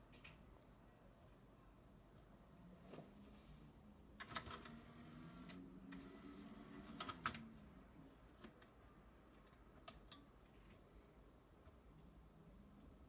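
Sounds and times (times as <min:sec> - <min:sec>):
faint motor whir: 0:02.8 - 0:08.6.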